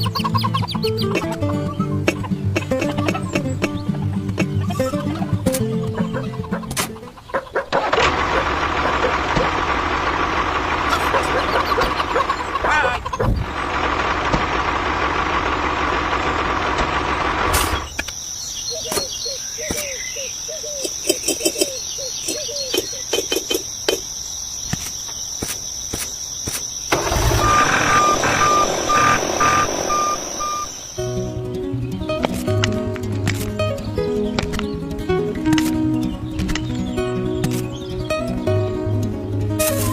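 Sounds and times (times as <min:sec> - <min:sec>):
truck engine running: 0:07.8 - 0:18.0, 0:26.9 - 0:39.4
reversing beeper: 0:26.9 - 0:31.4
high whistle: 0:27.0 - 0:31.4.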